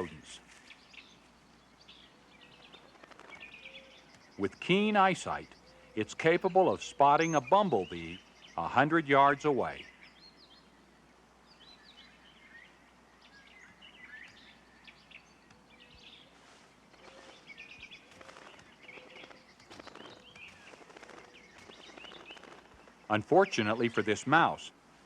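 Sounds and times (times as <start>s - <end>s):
bird chirps and twittering: 0.0s - 24.5s
rustling: 2.5s - 4.1s, 16.2s - 23.1s.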